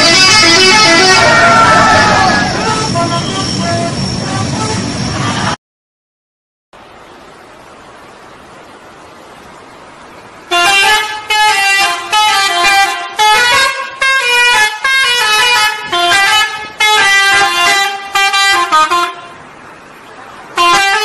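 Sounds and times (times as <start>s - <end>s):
multi-tone bus horn tune: 0.0s - 5.6s, 10.4s - 19.6s, 20.4s - 21.0s.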